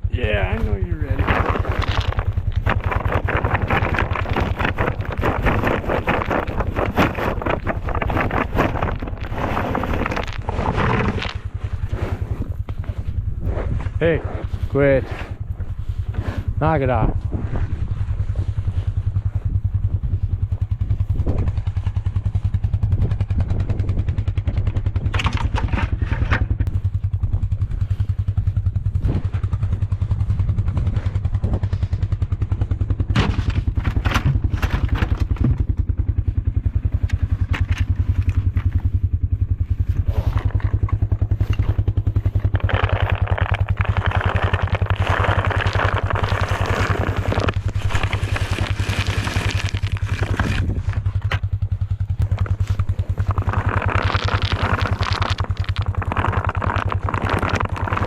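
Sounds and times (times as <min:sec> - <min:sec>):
vehicle engine idling: 0:00.0 - 0:25.1, 0:25.7 - 0:58.0
knocks and clatters: 0:00.6 - 0:11.6, 0:23.1 - 0:27.6, 0:32.9 - 0:36.1, 0:40.2 - 0:58.0.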